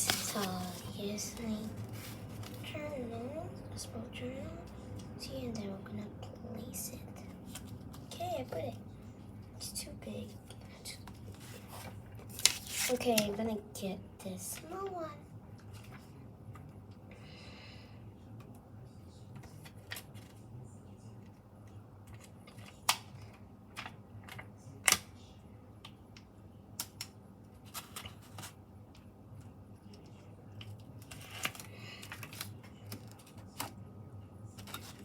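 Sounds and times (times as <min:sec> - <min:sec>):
light rustling of stickers: 0:00.0 - 0:02.8
faint low hum: 0:00.0 - 0:35.0.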